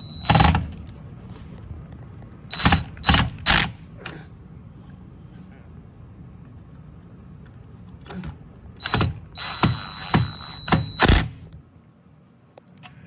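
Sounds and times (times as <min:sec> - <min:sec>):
power drill motor whine: 0:00.0 - 0:00.8, 0:02.5 - 0:03.6, 0:08.8 - 0:11.5
drill clutch clicks: 0:00.0 - 0:00.9, 0:02.5 - 0:03.8, 0:08.8 - 0:11.5.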